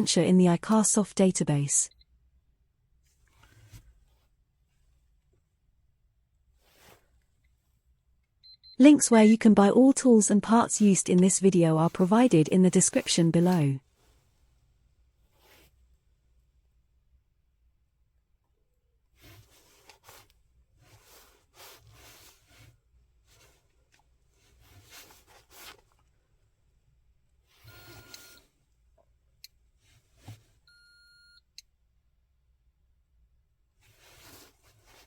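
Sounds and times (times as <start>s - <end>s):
handling and rustling: 19.1s - 26.3s.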